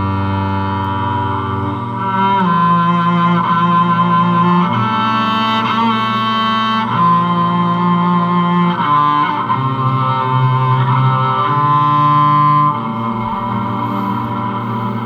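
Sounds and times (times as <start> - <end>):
bowed cello sustained notes: 0.0 - 15.0.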